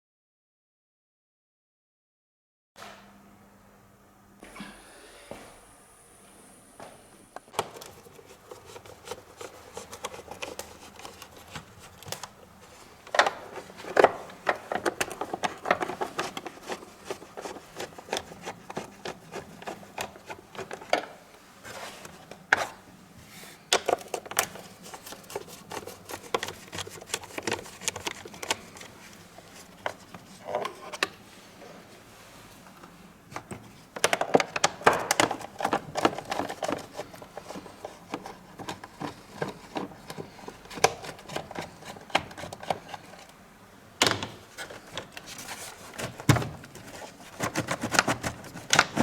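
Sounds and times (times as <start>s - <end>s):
hands clicking on plastic parts: 23.7s - 28.9s, 33.3s - 43.4s.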